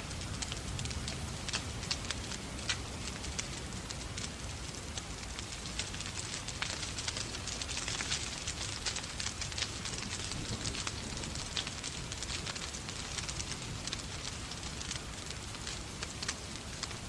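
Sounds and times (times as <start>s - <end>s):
falling rain: 0.0s - 17.0s
wood fire crackling and popping: 0.0s - 17.0s.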